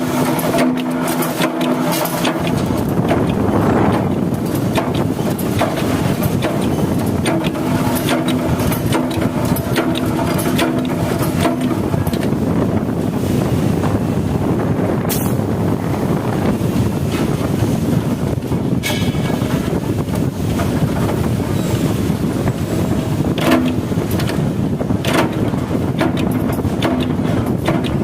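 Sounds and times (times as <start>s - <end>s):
machine humming: 0.0s - 28.0s
short clicks and rattles: 0.2s - 12.4s, 23.3s - 24.4s, 25.0s - 28.0s.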